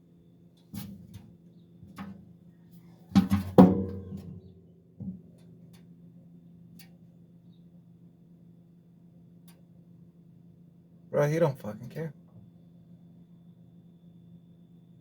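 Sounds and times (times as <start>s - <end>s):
sharp knocks: 3.2s - 4.4s.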